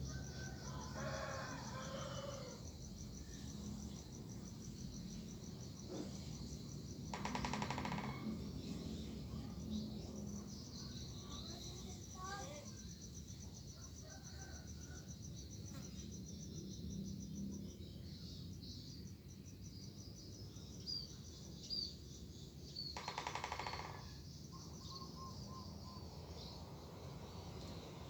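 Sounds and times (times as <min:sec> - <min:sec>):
high insect trill: 0:00.0 - 0:28.0
rasping creaking sound: 0:07.2 - 0:08.3.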